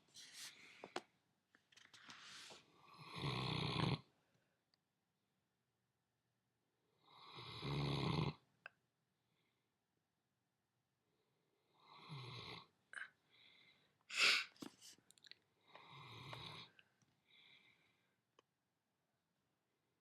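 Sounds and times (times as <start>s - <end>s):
person snoring: 3.0s - 4.0s, 7.1s - 8.4s
puff of breath: 13.4s - 14.9s.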